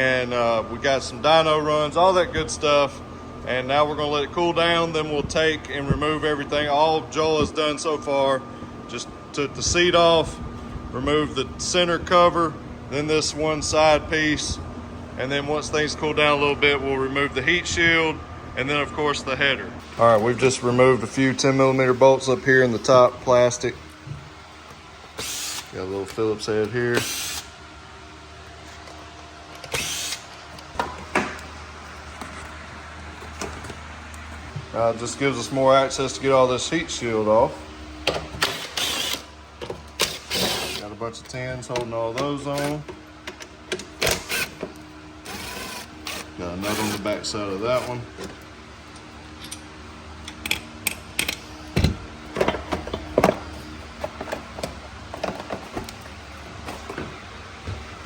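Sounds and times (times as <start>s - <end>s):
steady low hum: 0.0s - 58.0s
power driver whirring: 19.8s - 27.6s, 28.4s - 31.6s, 38.0s - 49.6s.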